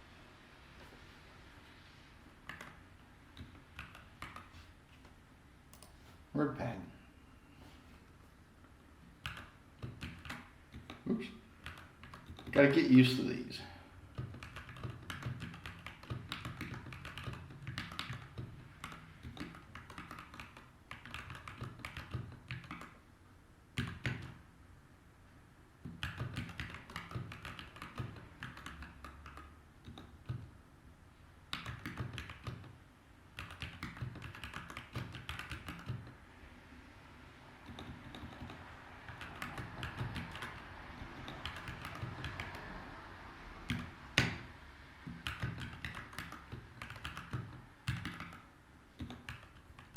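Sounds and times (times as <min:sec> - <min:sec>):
typing on mechanical keyboard: 0:02.4 - 0:02.8, 0:03.4 - 0:04.5, 0:09.2 - 0:12.7, 0:14.1 - 0:23.0, 0:23.8 - 0:24.4, 0:25.8 - 0:30.5, 0:31.5 - 0:32.8, 0:33.4 - 0:36.2, 0:37.6 - 0:42.9, 0:43.6 - 0:49.9.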